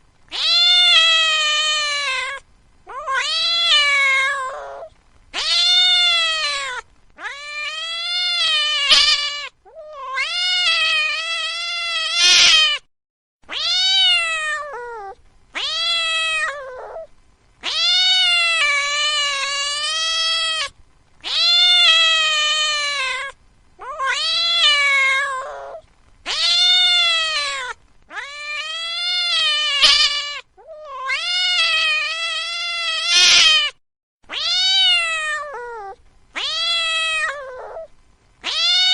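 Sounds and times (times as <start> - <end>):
cat meowing: 0.3 - 12.9, 13.5 - 38.9.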